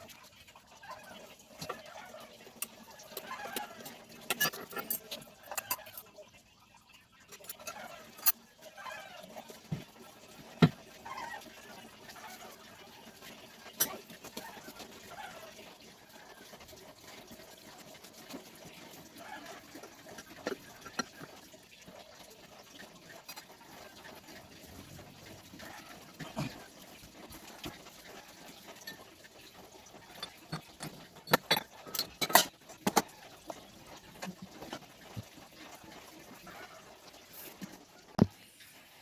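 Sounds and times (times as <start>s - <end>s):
metal parts and tools clinking: 4.3s - 6.0s, 30.1s - 33.0s.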